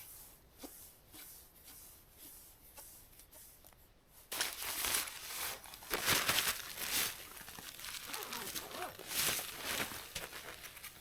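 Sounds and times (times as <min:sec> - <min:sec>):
faint crunches: 0:04.3 - 0:11.0
tent fabric crinkling: 0:04.3 - 0:11.0.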